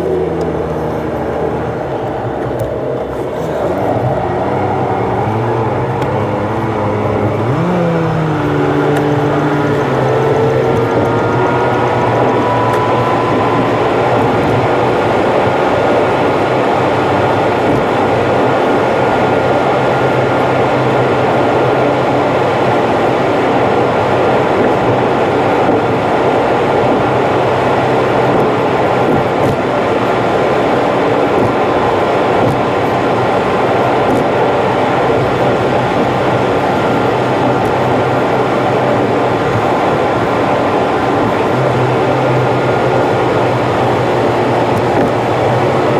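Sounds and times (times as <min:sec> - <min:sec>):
rising tone: 0:00.0 - 0:16.3
sped-up car road noise: 0:00.0 - 0:45.9.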